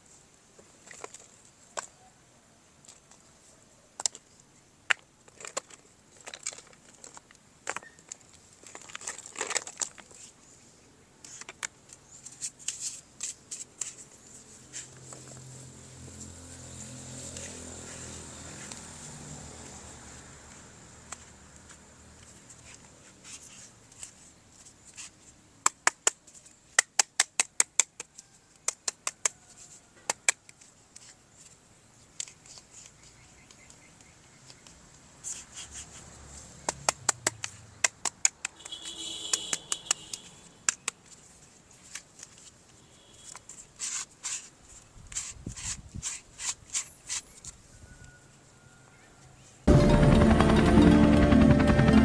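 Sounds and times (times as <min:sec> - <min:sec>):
plastic toy parts clicking: 0:04.9 - 0:10.2, 0:36.7 - 0:41.2.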